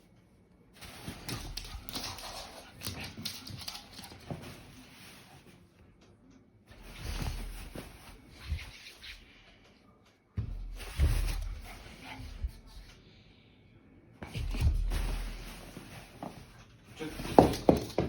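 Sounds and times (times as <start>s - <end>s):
dog scuffling and knocking: 14.2s - 18.0s.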